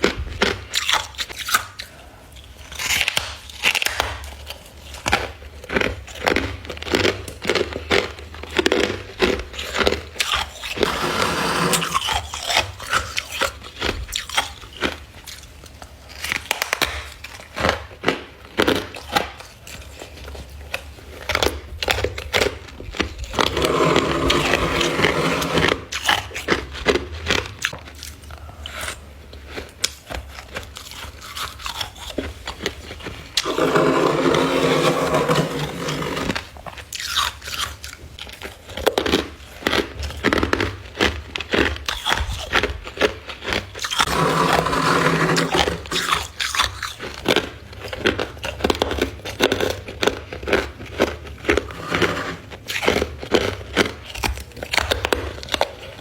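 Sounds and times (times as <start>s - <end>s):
crunching ice chewing: 0.0s - 56.0s
squeak of packed frost: 10.7s - 13.2s, 44.0s - 46.3s.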